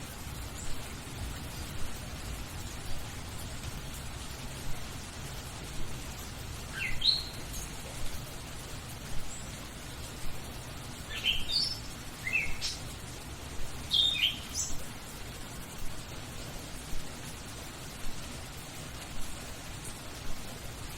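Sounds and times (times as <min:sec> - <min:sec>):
rain hissing: 0:00.0 - 0:20.9
songbird chirping: 0:05.3 - 0:08.2, 0:09.1 - 0:14.9.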